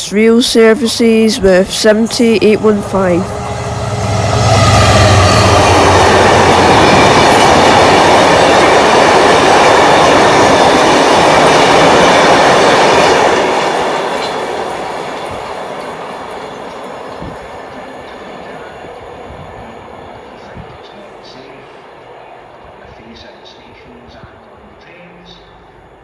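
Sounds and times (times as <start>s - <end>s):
train wheels rolling on rails: 0.0s - 26.0s.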